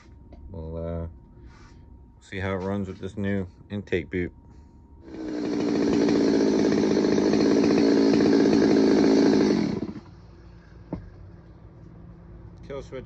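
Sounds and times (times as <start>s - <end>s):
chainsaw engine running: 5.0s - 10.2s.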